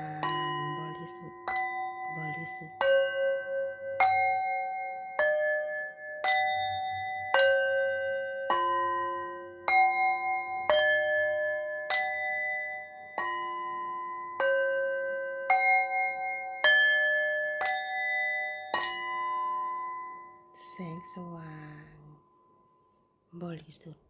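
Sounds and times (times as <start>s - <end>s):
bell-like chime melody: 0.0s - 21.0s.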